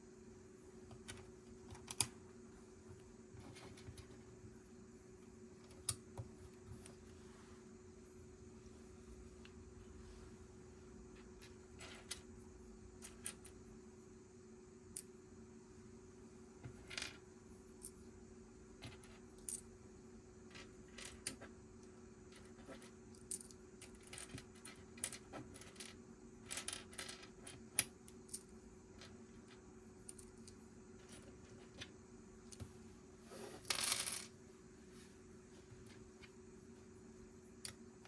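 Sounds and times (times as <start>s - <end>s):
faint low hum: 0.0s - 38.0s.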